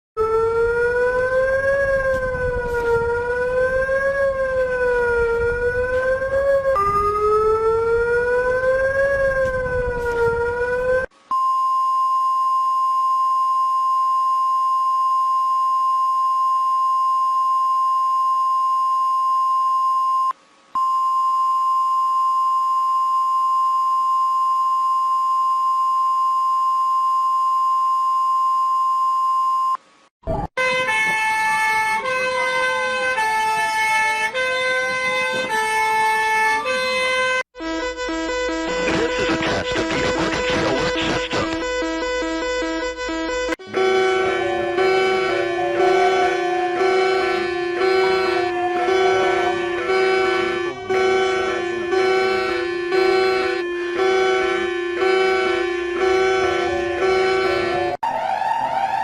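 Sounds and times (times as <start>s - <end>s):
wavering siren-like alert tone: 40.0s - 59.0s.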